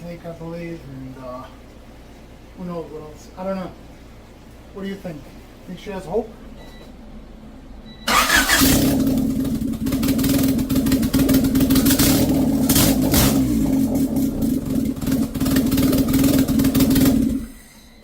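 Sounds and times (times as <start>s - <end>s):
car engine running roughly: 8.1s - 17.7s.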